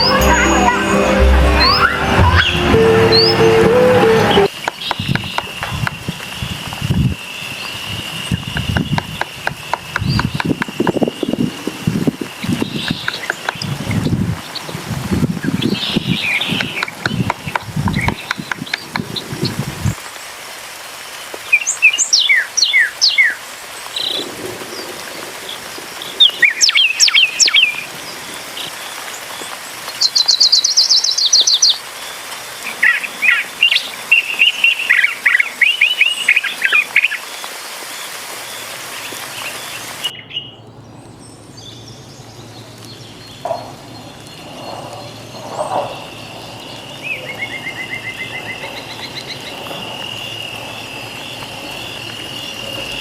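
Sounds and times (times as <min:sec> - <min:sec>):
fast high bird trill: 0:00.0 - 0:04.5
songbirds chirping and singing: 0:39.4 - 0:53.0.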